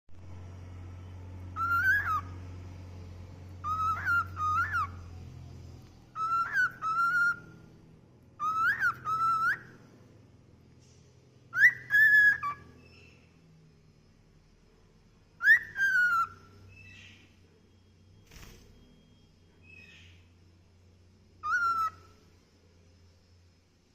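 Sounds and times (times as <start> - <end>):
cockatiel whistling: 1.6 - 2.4, 3.6 - 5.0, 6.2 - 7.5, 8.4 - 9.7, 11.5 - 13.2, 15.4 - 17.2, 21.4 - 22.2.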